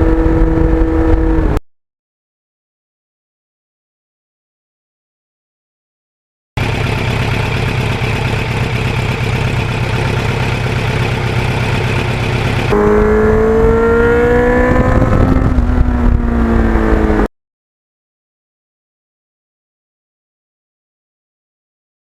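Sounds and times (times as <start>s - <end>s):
motorcycle engine accelerating: 0.0s - 1.6s, 6.6s - 17.3s
wind rush: 0.0s - 1.6s, 12.7s - 17.3s.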